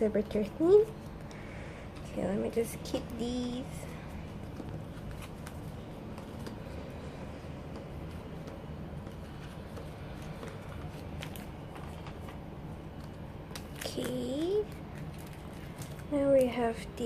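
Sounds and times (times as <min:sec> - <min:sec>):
steady low hum: 0:00.0 - 0:17.0
paper rustling: 0:03.8 - 0:16.6.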